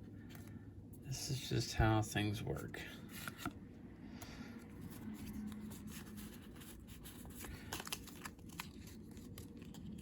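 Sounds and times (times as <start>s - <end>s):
trading cards rustling and clicking: 4.2s - 10.0s.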